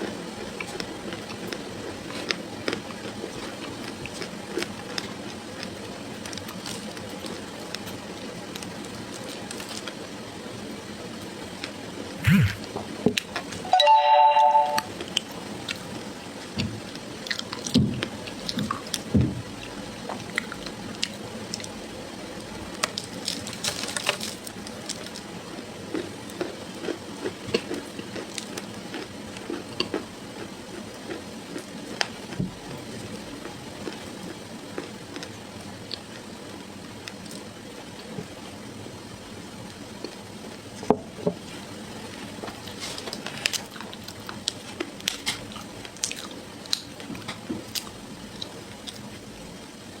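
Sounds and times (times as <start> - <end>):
chewing snack bar: 0.0 - 7.9, 22.7 - 32.4, 42.7 - 49.1.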